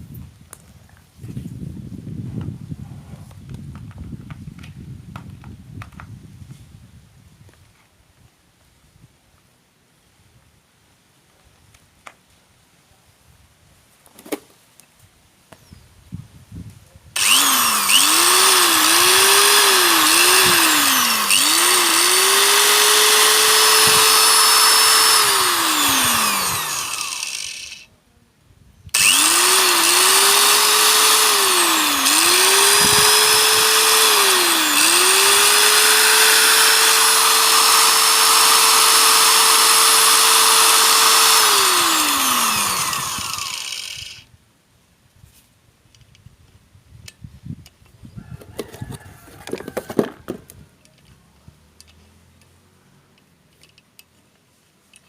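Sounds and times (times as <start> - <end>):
electric angle grinder motor whine: 17.2 - 27.9, 28.9 - 44.3.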